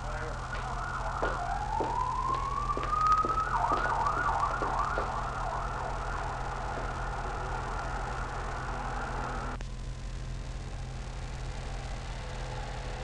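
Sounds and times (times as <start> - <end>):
emergency vehicle siren: 0.0 - 9.6.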